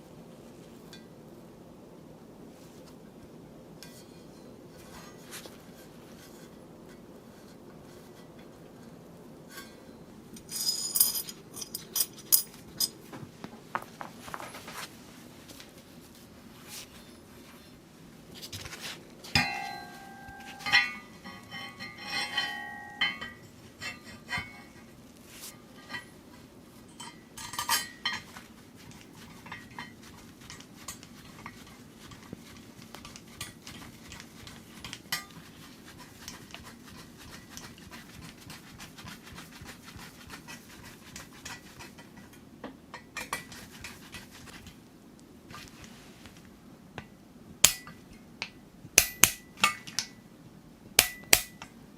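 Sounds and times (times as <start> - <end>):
metal parts clinking: 10.4 - 13.0.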